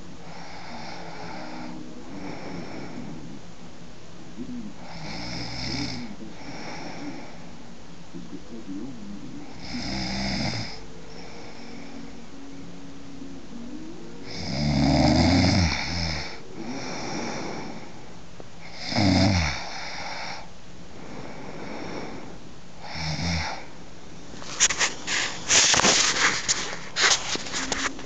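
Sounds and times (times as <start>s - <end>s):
woman snoring: 0.2s - 3.4s, 4.8s - 7.4s, 9.4s - 12.1s, 14.1s - 18.0s, 18.6s - 23.7s
rustling: 24.2s - 28.0s.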